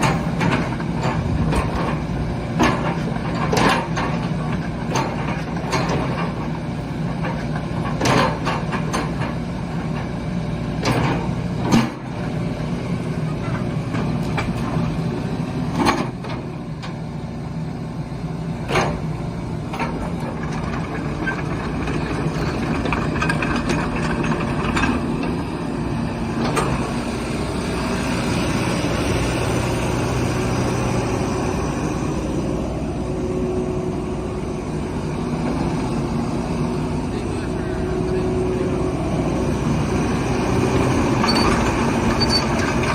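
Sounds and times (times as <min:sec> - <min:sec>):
excavator diesel engine running: 0:00.0 - 0:42.9
machine clanks: 0:19.7 - 0:25.4.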